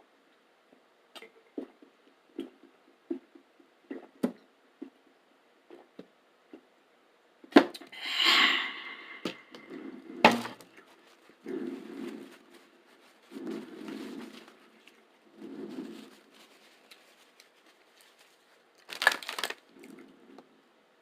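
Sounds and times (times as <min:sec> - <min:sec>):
crunchy crackers chewing: 0:15.9 - 0:20.1.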